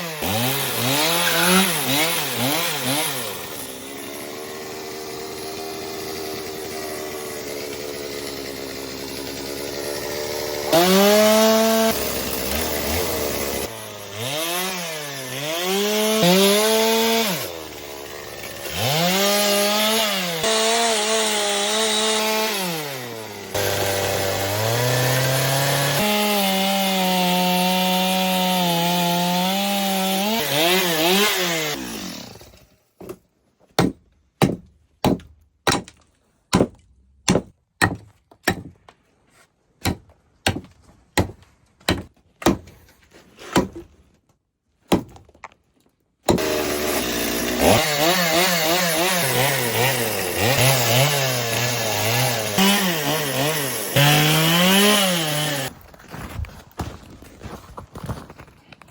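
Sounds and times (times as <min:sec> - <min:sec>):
chainsaw cutting wood: 0:00.0 - 0:33.2, 0:46.2 - 0:55.8.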